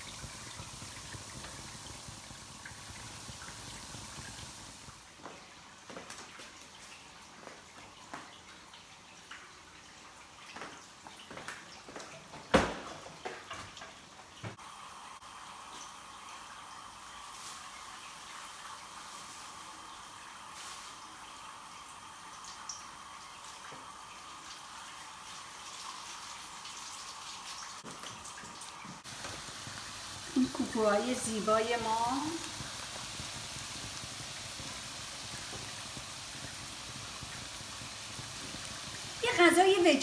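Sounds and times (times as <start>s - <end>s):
patties sizzling in hot oil: 0.0s - 5.2s, 14.5s - 40.0s.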